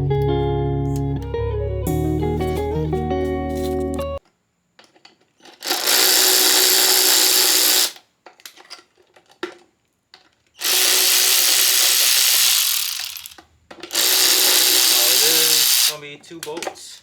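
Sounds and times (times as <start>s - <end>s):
cordless power drill: 5.6s - 8.0s, 10.6s - 16.0s.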